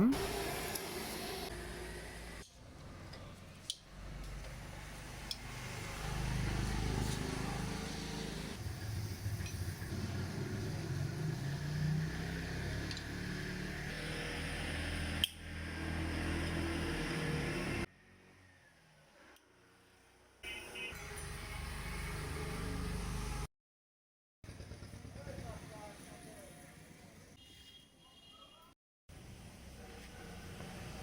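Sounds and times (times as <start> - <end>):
motorcycle engine running: 24.4 - 26.4.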